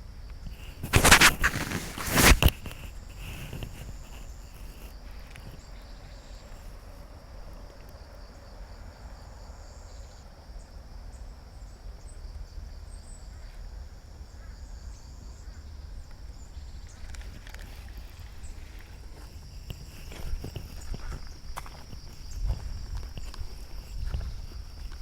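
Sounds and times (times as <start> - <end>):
high-pitched insect trill: 0.0 - 25.0
wind rumble on microphone: 15.1 - 25.0.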